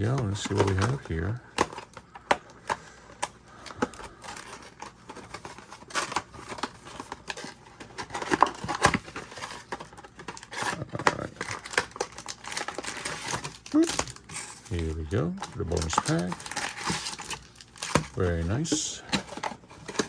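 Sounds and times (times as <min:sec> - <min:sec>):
cardboard rustling: 0:00.0 - 0:20.0
plastic wrapping crinkling and tearing: 0:00.0 - 0:20.0.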